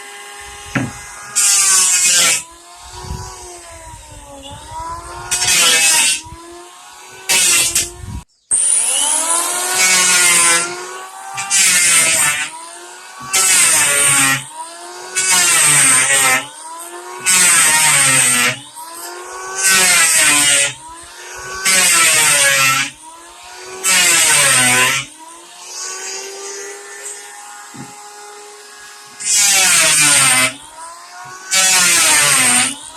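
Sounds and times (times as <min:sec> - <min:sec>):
electric planer cutting wood: 0:00.0 - 0:32.9
planer motor whine: 0:00.0 - 0:32.9.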